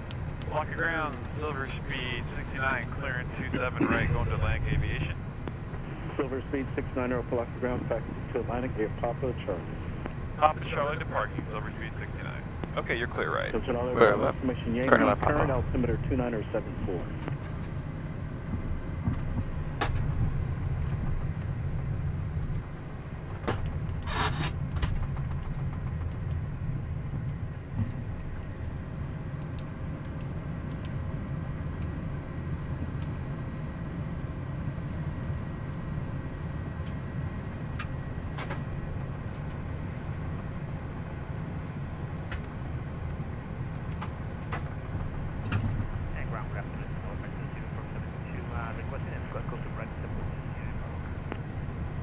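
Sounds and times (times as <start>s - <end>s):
jet engines idling rumble: 0.0s - 52.0s.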